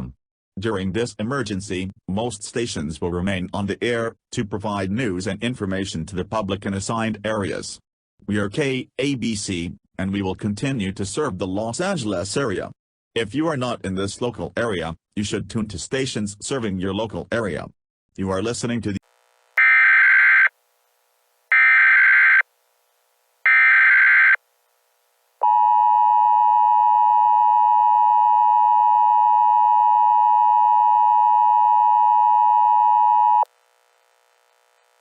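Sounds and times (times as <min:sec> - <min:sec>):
screeching digital data bursts: 0:21.5 - 0:22.4, 0:23.5 - 0:24.4.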